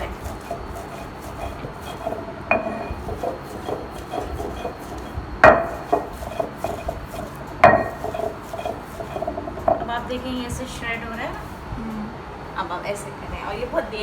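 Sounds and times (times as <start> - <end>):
stone roller grinding on stone: 0.0 - 10.0
stone-on-stone knocks: 1.4 - 9.9.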